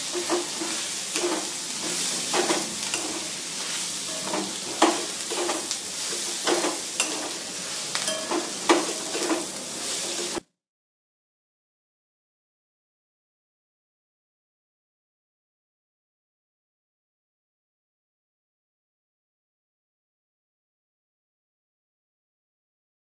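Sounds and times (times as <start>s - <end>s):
food sizzling in a pan: 0.0s - 10.4s
spatula scraping a pan: 0.0s - 10.4s.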